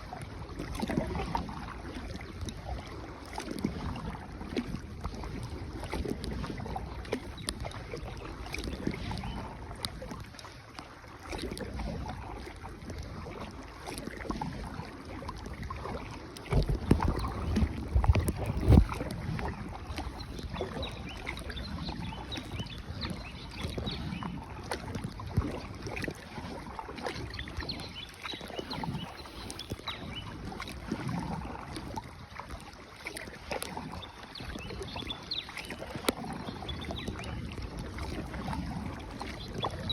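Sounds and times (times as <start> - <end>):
paddles in water: 0.0 - 39.9
wind buffeting microphone: 15.4 - 32.4.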